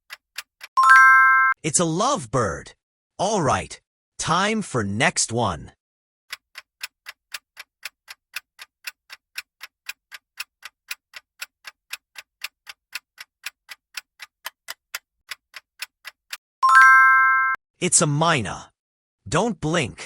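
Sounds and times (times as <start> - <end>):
clock ticking: 0.0 - 1.6, 6.3 - 17.2.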